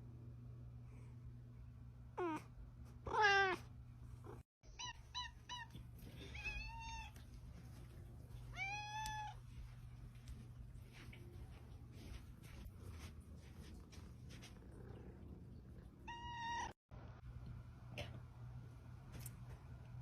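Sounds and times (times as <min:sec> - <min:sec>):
cat meowing: 0:03.1 - 0:03.6, 0:08.5 - 0:09.4, 0:16.1 - 0:16.8.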